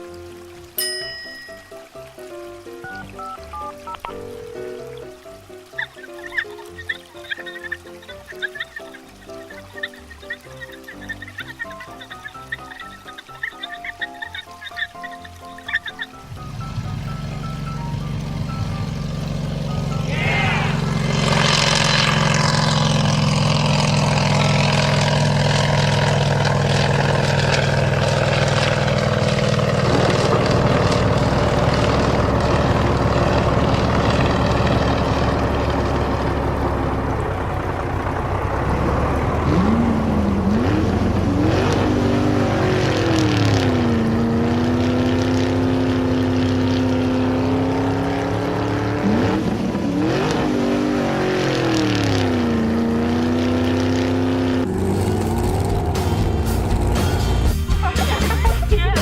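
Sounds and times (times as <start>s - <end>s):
cartoon engine drone and revving: 15.6s - 58.4s.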